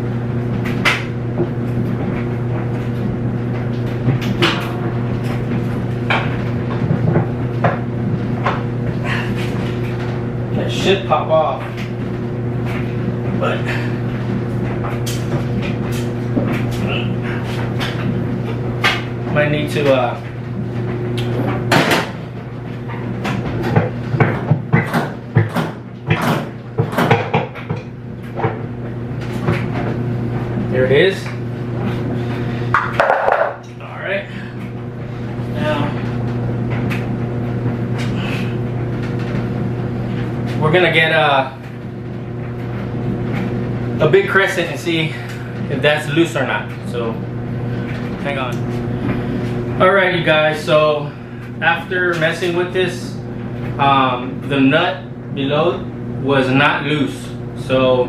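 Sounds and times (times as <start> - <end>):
washing machine agitator knocking: 0.0 - 55.7
clothes dryer humming: 0.0 - 58.0
knocks and clatter: 20.7 - 30.0, 32.7 - 33.6.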